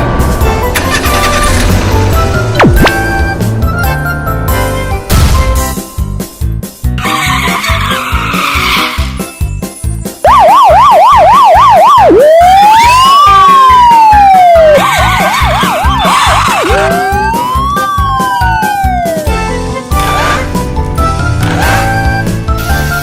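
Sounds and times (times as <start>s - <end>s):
electronic siren: 2.6s - 3.0s, 10.2s - 19.4s.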